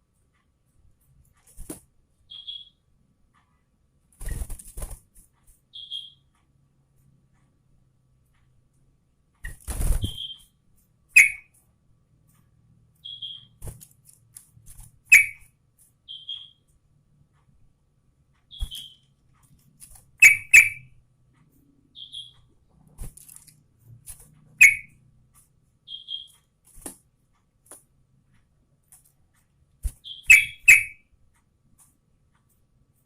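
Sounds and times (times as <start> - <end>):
bird whistled chirps: 2.3 - 2.8, 5.7 - 6.2, 10.0 - 10.5, 11.2 - 11.5, 13.0 - 13.6, 15.1 - 15.4, 16.1 - 16.6, 18.5 - 19.0, 22.0 - 22.4, 24.6 - 24.9, 25.9 - 26.4, 30.0 - 31.0.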